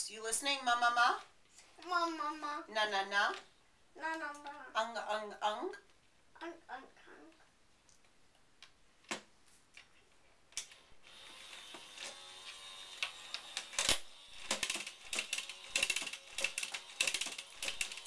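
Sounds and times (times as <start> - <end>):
toy mechanism whirring: 11.0 - 18.0
toy mechanism clicks: 11.5 - 18.0
rapid ratcheting clicks: 13.6 - 18.0.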